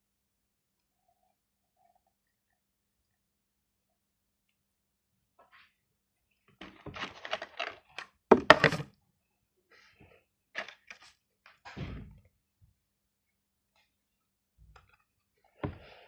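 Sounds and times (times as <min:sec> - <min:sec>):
knocks and clatters of hard objects: 0:06.6 - 0:08.9.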